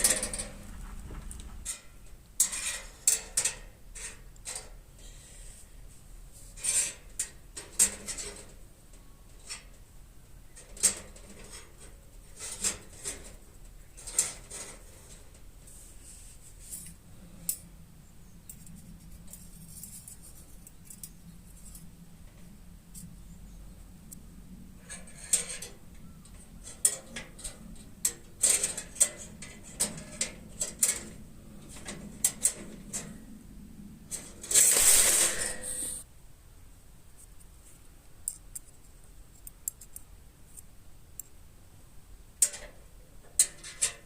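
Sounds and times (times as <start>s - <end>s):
sheet metal clinking: 34.1s - 36.0s.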